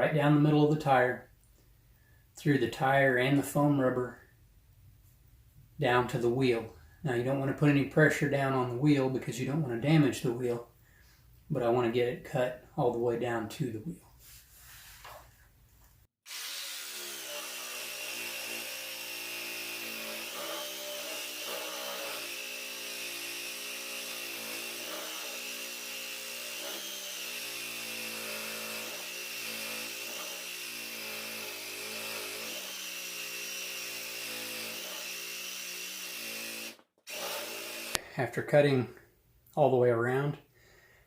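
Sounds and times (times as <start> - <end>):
reciprocating saw cutting rubber: 16.2 - 38.0.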